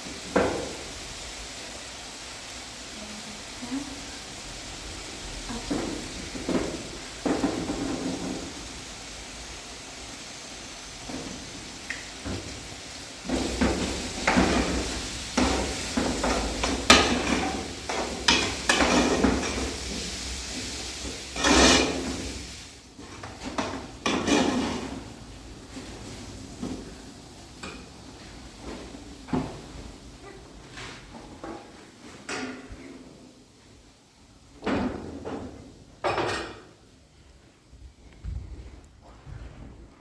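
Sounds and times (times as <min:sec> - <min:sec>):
objects knocking and clattering: 0:05.6 - 0:08.7.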